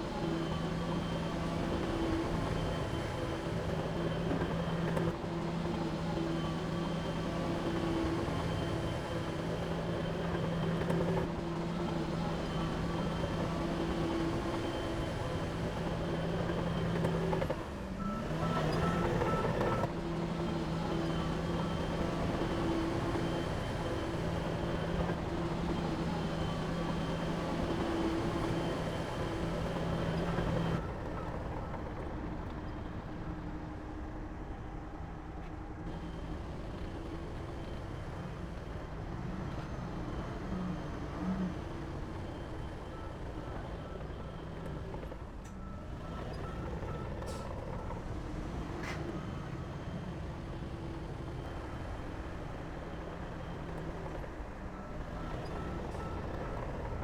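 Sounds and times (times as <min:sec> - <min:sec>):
heavy diesel engine running: 0:00.0 - 0:33.7, 0:35.0 - 0:57.0.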